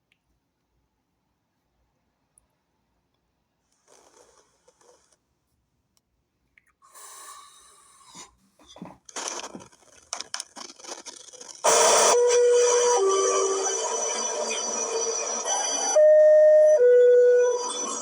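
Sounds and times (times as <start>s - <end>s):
steady tone: 11.8s - 18.0s.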